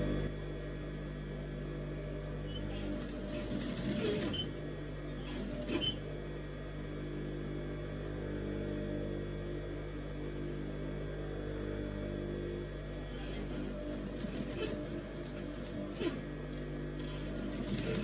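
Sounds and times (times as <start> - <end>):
electric sewing machine running: 2.7 - 6.1, 13.1 - 18.0.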